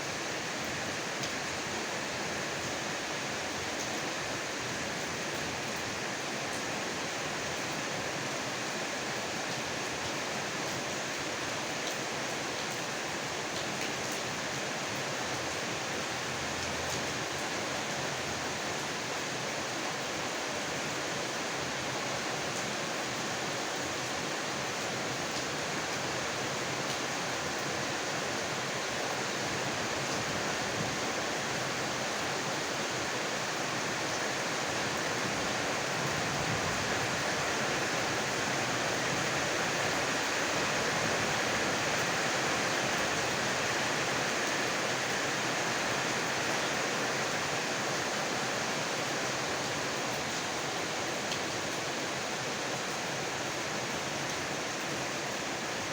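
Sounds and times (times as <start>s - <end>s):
heavy rain falling: 0.1s - 55.9s.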